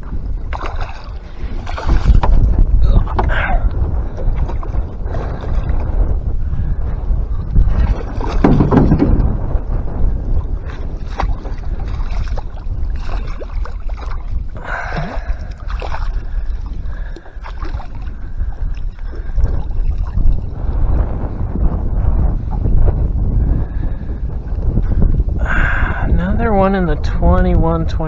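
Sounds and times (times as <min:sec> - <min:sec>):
water lapping: 0:00.0 - 0:21.5
wind buffeting microphone: 0:00.0 - 0:28.0
knocks and clatters: 0:08.1 - 0:09.5.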